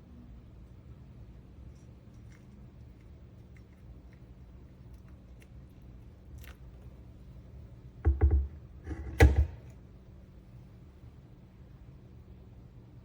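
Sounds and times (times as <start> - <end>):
thumps and knocks: 8.0 - 9.7.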